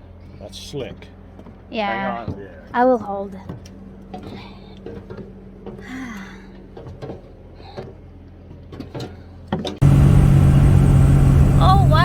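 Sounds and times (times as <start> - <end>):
loud rushing noise with low hum: 9.8 - 12.0.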